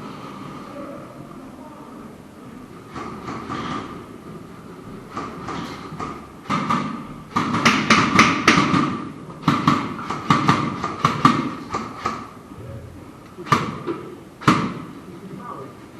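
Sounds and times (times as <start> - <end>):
muffled voices: 0.0 - 6.3, 12.4 - 14.3, 14.9 - 15.9.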